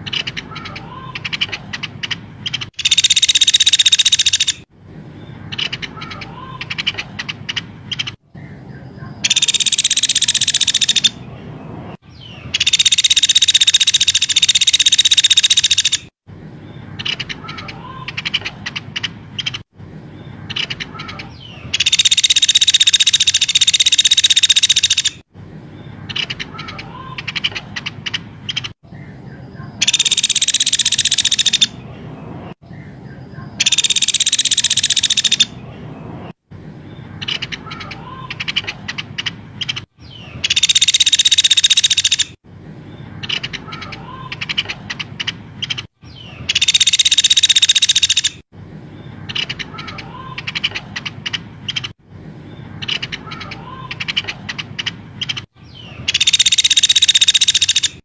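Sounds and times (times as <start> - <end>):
shrill rapid bird trilling: 0.0 - 4.7, 5.3 - 11.4, 12.1 - 16.2, 16.8 - 19.7, 20.4 - 25.3, 25.9 - 31.9, 33.4 - 36.3, 37.1 - 42.4, 43.1 - 48.5, 49.2 - 52.0, 52.6 - 58.0
bird chirps and whistles: 2.5 - 4.6.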